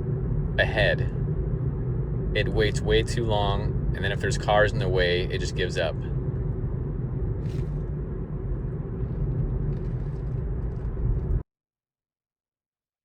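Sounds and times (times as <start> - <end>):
road and tyre rumble in car: 0.0 - 11.5.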